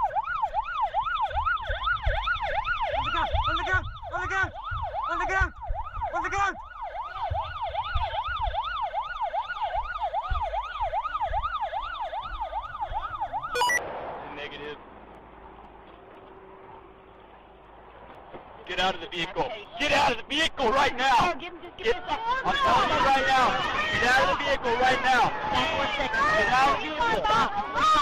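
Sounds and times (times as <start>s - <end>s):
police siren yelping: 0.0s - 13.8s, 20.7s - 28.0s
lower-pitched second siren: 0.0s - 13.9s
vehicle rumble: 0.0s - 28.0s.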